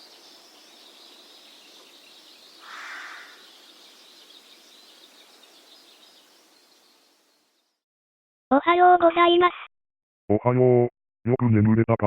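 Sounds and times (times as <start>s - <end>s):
birds twittering: 0.0s - 7.7s.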